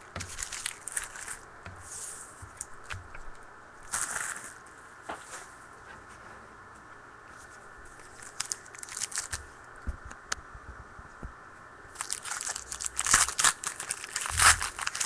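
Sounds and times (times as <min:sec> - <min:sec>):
card pack wrappers crinkling: 0:00.0 - 0:01.4, 0:02.5 - 0:04.6, 0:07.9 - 0:09.5, 0:12.0 - 0:15.0.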